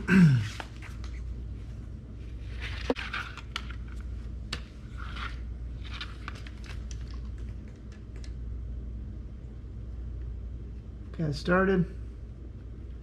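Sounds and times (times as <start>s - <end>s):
steady low hum: 0.0s - 13.0s
rustling scrapes: 0.4s - 4.1s, 4.7s - 7.2s.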